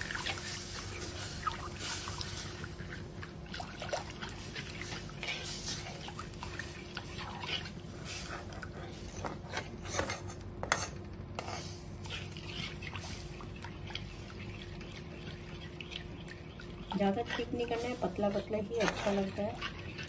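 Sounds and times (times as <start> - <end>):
liquid sloshing: 0.0 - 10.2, 11.4 - 20.0
spoon stirring and scraping pan: 0.0 - 20.0
steady low hum: 0.0 - 20.0.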